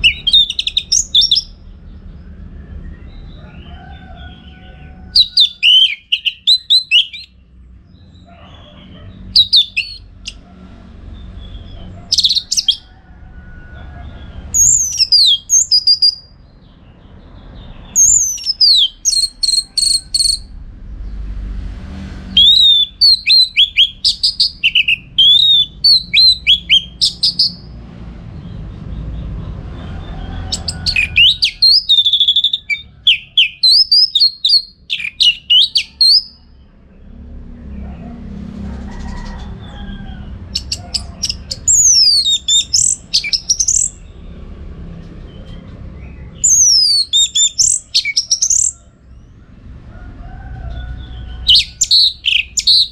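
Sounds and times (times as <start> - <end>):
thrush singing: 0.0 - 1.6, 4.2 - 7.3, 9.2 - 10.4, 22.1 - 27.8, 30.0 - 36.6, 40.2 - 44.1, 46.4 - 48.8, 50.8 - 52.9
low background rumble: 0.0 - 52.9.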